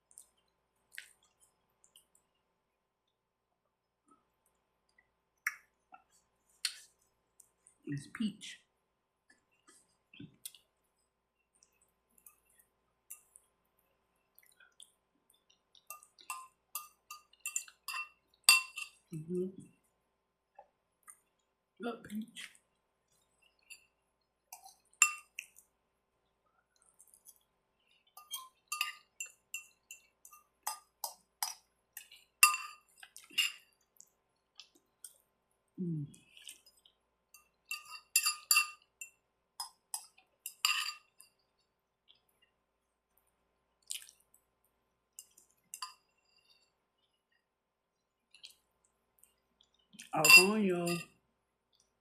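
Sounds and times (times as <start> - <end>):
mouth clicks and wet smacks eating: 0.0 - 2.3, 9.3 - 10.7, 20.6 - 21.5, 24.6 - 25.7, 26.6 - 29.4, 36.1 - 37.0, 43.8 - 44.5, 48.2 - 50.2
utensil clinking against dish: 32.4 - 33.6.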